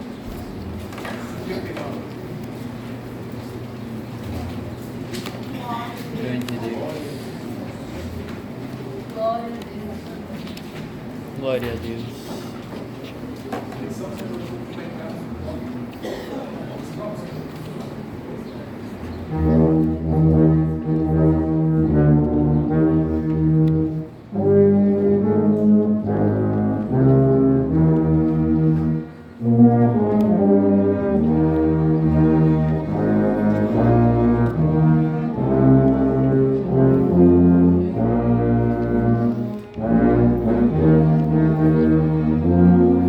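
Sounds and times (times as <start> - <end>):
tuba playing a hymn: 19.1 - 43.0.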